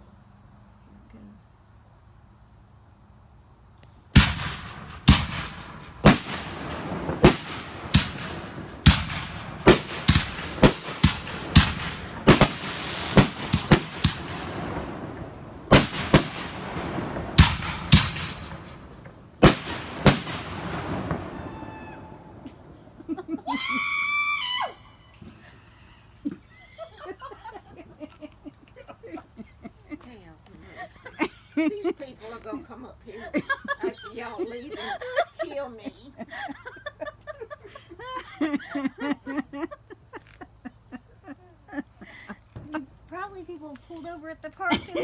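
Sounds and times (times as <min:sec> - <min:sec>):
firework crackling: 0:04.2 - 0:23.1
firework bangs: 0:04.2 - 0:23.2.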